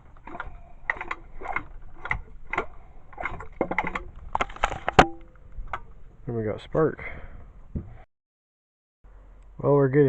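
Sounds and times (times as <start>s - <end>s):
mower engine clicking and rattling: 0.0s - 6.0s.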